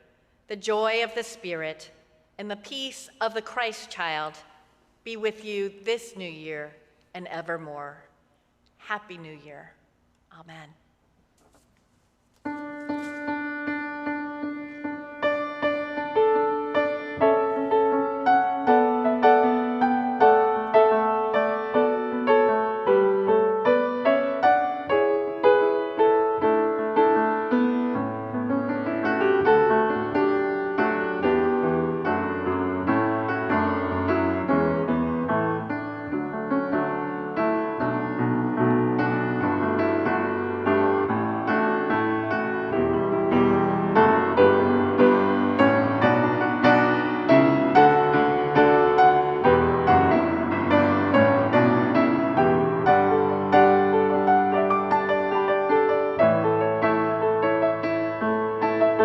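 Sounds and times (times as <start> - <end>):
solo piano chords: 12.5 - 59.0.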